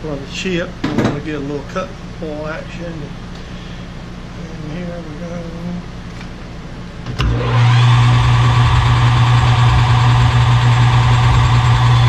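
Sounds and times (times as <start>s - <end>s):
lathe motor humming and whining: 7.2s - 12.0s.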